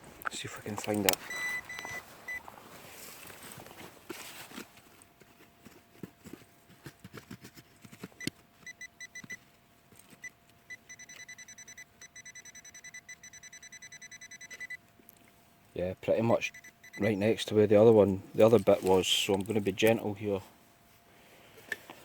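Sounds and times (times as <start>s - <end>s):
faint steady hum: 0.0s - 22.0s
metal detector pinpointer beeping: 1.0s - 2.4s, 8.2s - 9.4s, 10.2s - 14.8s, 16.4s - 17.2s.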